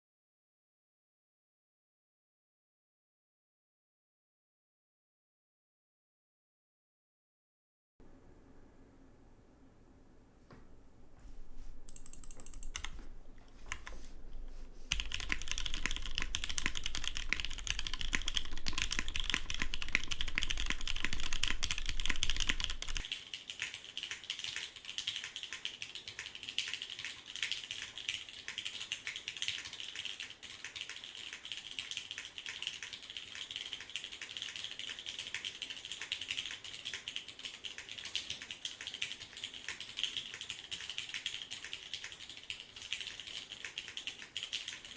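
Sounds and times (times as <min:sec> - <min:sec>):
mechanical keyboard typing: 0:11.7 - 0:44.9.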